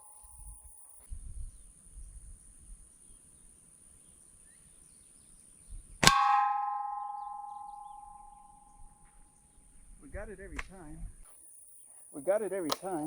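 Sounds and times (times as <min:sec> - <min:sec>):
pellet striking metal tank: 0:06.0 - 0:08.2
metal tank ringing: 0:06.0 - 0:08.9.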